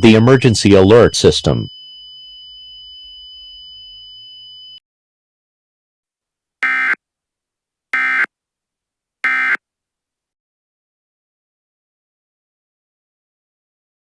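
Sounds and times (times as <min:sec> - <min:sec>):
high electronic tone: 0:06.6 - 0:07.0, 0:08.0 - 0:08.3, 0:09.2 - 0:09.6.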